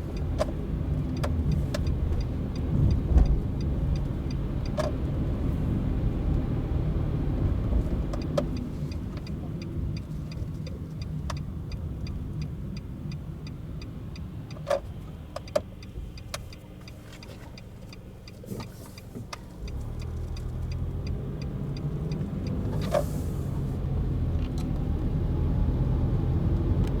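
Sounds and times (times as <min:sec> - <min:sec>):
car engine and road rumble: 0:00.0 - 0:27.0
faint ticking: 0:15.3 - 0:22.6.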